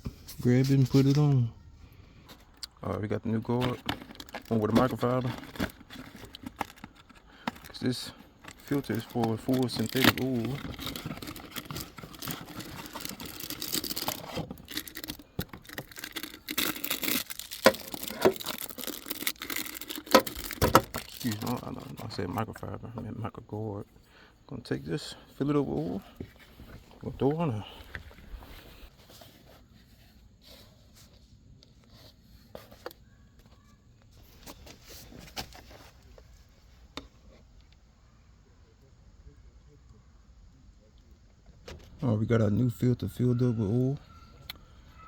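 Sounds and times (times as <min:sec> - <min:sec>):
packaging rustling and crinkling: 0:00.2 - 0:01.5, 0:03.4 - 0:22.6.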